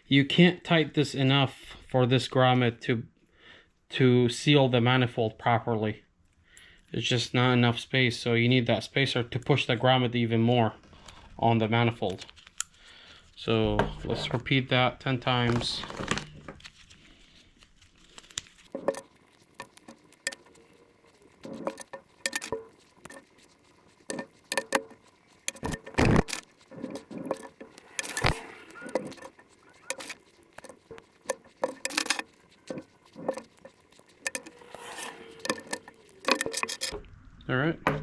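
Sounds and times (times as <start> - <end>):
metal washers clicking and tapping: 18.7 - 37.0.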